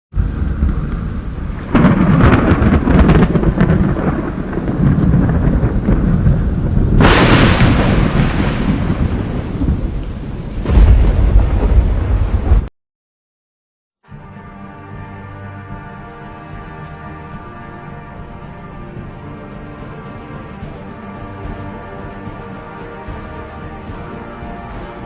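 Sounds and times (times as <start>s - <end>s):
deep rumbling thunder: 0.1s - 12.7s
heavy rain: 0.1s - 12.7s, 14.1s - 25.0s
sharp thunder crack: 0.2s - 12.7s.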